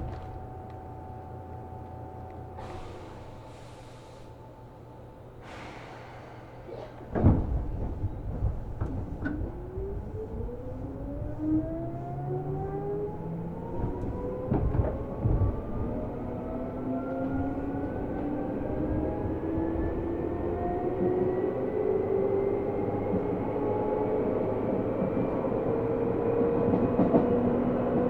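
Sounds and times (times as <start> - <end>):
wheels rumbling: 6.9 - 21.4.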